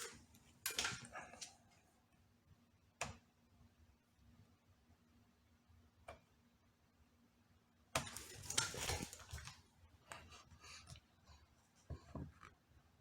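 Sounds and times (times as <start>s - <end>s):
clattering and scraping on laptop: 8.0s - 12.6s.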